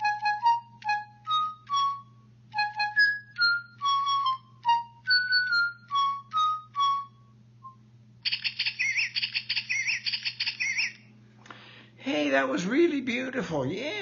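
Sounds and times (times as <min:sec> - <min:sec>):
canary singing: 0:08.2 - 0:11.2.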